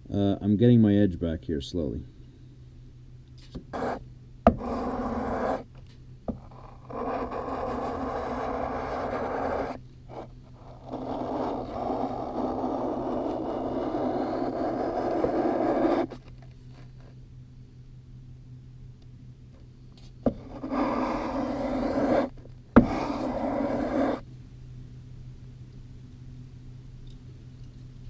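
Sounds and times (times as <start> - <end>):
chisel scraping on sandpaper: 3.7 - 5.7, 6.3 - 17.1, 20.3 - 24.2.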